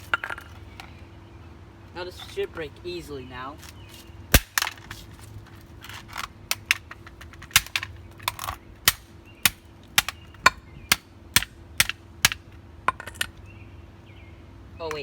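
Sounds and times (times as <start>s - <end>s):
plastic remote being smashed: 4.3s - 5.0s, 6.5s - 10.2s.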